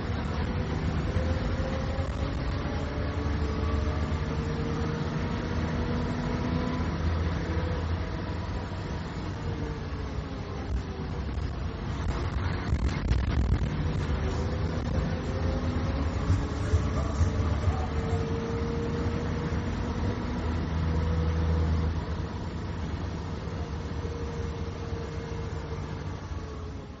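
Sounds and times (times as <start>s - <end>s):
bus diesel engine drone: 0.0s - 27.0s
gearbox whine: 0.0s - 27.0s.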